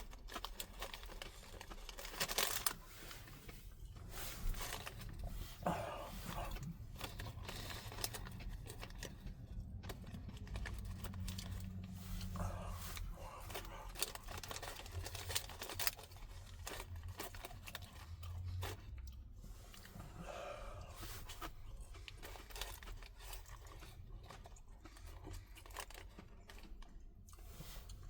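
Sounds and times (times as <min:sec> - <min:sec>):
paper packaging crinkling: 0:00.0 - 0:05.3, 0:06.5 - 0:18.1
mouth clicks and chewing: 0:04.6 - 0:28.0.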